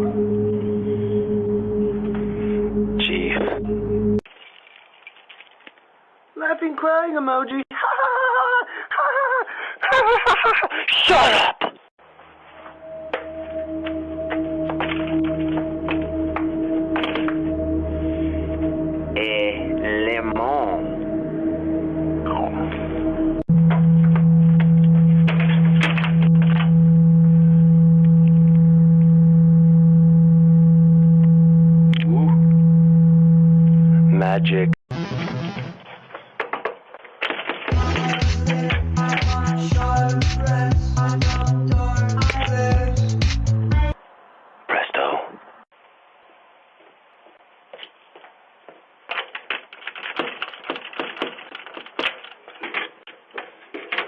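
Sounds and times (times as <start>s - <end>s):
loud low hum: 12.8s - 35.6s
crackling and clicking: 49.1s - 54.0s.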